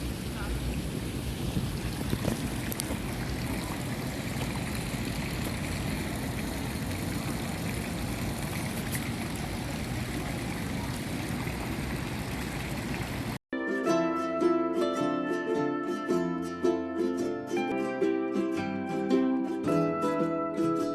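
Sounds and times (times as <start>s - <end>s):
water rushing: 0.0s - 13.4s.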